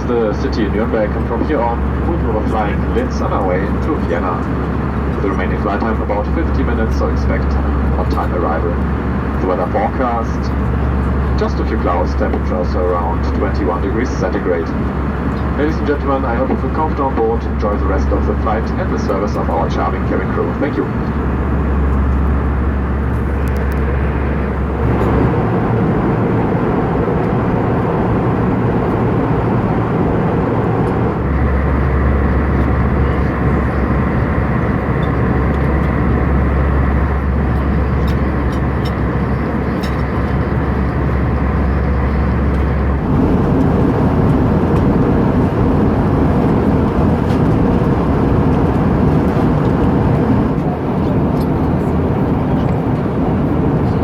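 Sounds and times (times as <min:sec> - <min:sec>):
airplane cabin noise: 0:00.0 - 0:54.0
low hum: 0:18.8 - 0:54.0.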